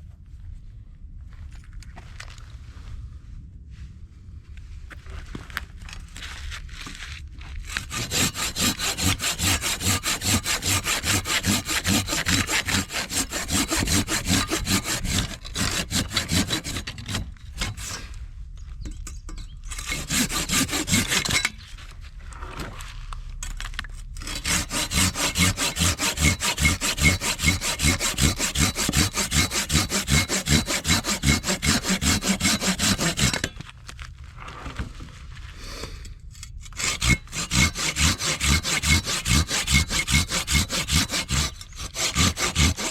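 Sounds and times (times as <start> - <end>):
hand saw cutting wood: 7.6 - 18.2, 19.7 - 21.6, 24.2 - 33.7, 35.8 - 42.9.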